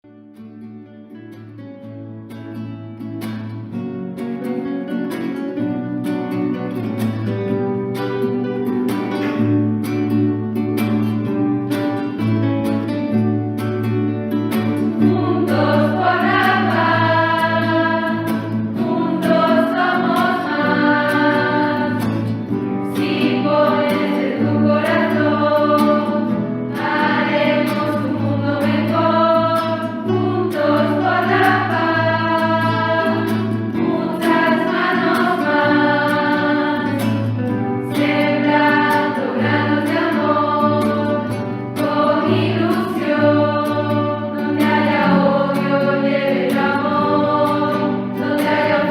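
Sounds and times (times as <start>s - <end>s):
choir singing: 14.6s - 48.9s.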